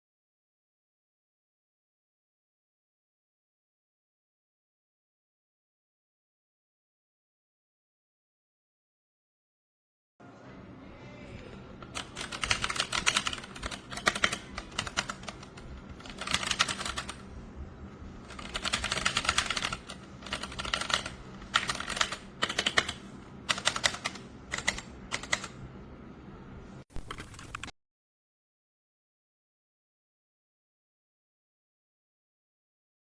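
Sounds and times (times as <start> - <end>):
faint steady hum: 10.2 - 27.7
mechanical keyboard keystroke clicks: 11.9 - 17.2, 18.3 - 25.6.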